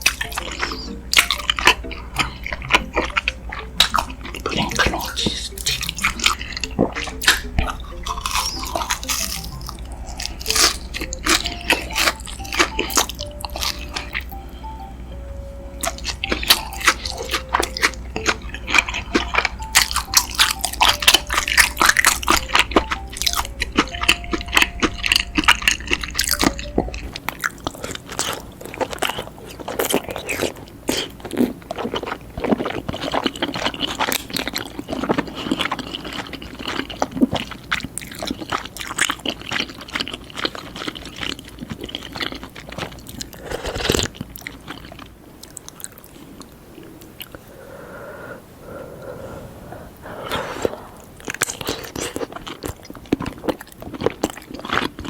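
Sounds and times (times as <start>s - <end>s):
wet chewing mouth sounds: 0.0s - 14.7s, 15.8s - 55.0s
low hum: 0.2s - 27.8s.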